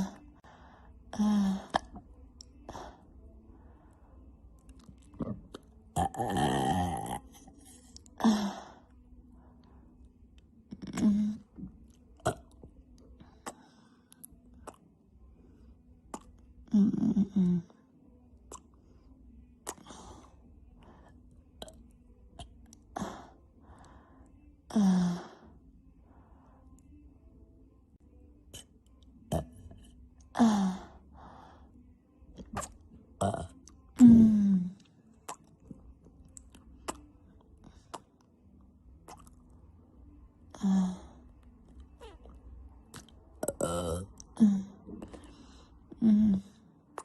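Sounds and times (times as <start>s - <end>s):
soft breaths: 0.0s - 4.6s, 23.0s - 27.2s, 44.4s - 46.9s
woman burping: 5.2s - 7.3s, 43.4s - 44.8s
mouth clicks: 13.4s - 14.8s, 16.1s - 16.4s, 36.3s - 37.1s, 39.1s - 39.5s.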